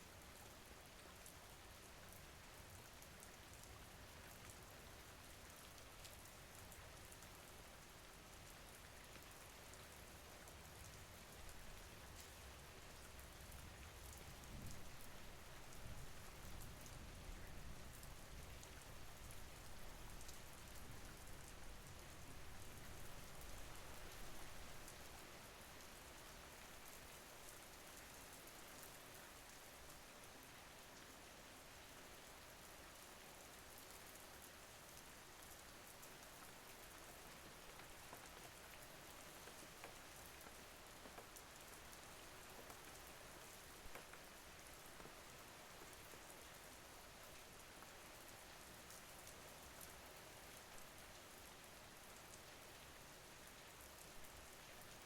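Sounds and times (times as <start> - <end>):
rain pattering: 0.2 - 55.0.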